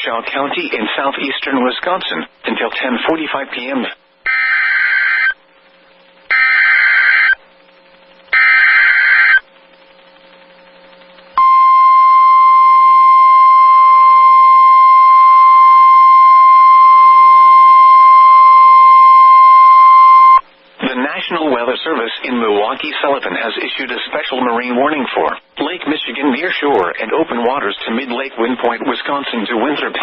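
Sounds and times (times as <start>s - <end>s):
steady alarm tone: 4.3s - 5.4s, 6.3s - 7.4s, 8.3s - 9.4s, 11.4s - 20.4s.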